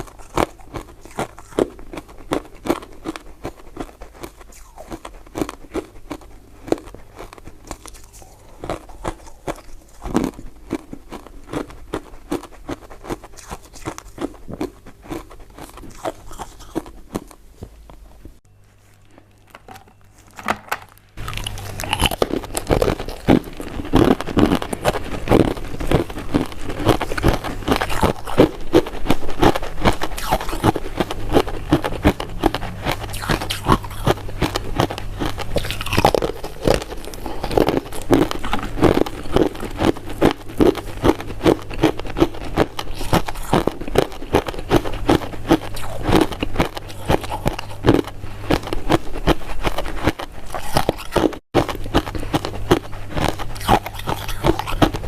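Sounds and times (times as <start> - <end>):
chewing mouth sounds: 0.0 - 17.4, 21.2 - 55.0.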